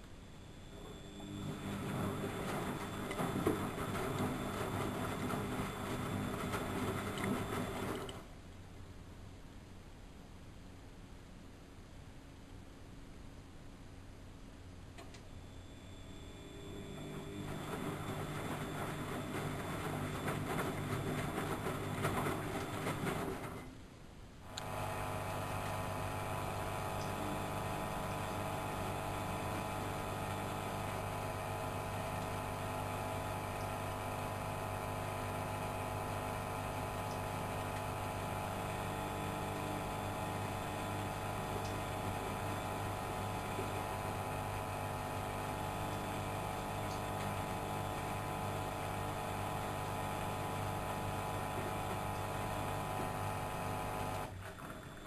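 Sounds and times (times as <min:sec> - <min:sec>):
washing machine motor hum: 0:00.0 - 0:08.3, 0:15.1 - 0:23.8, 0:24.4 - 0:55.0.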